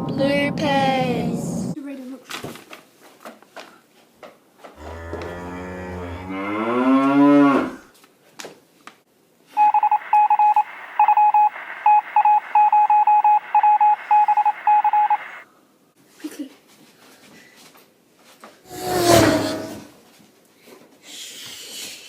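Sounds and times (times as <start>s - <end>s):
cow mooing: 4.8s - 7.8s
electronic beeps: 9.6s - 15.4s.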